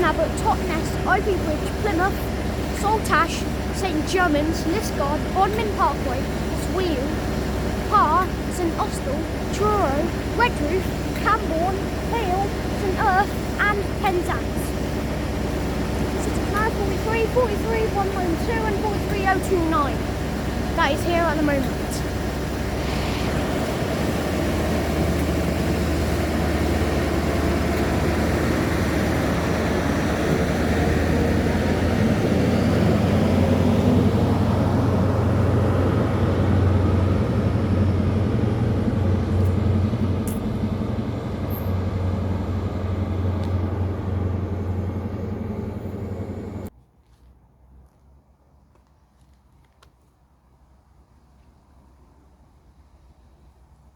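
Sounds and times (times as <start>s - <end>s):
diesel engine drone: 0.0s - 46.7s.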